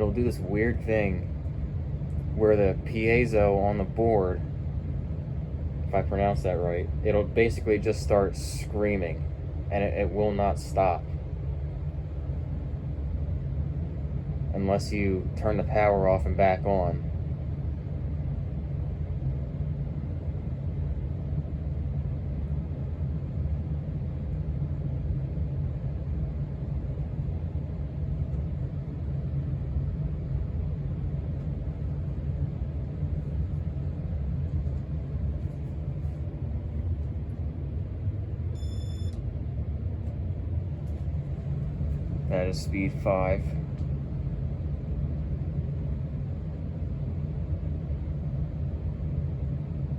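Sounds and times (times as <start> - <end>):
ceiling fan running: 0.0 - 49.9
short electronic beep: 38.6 - 39.2.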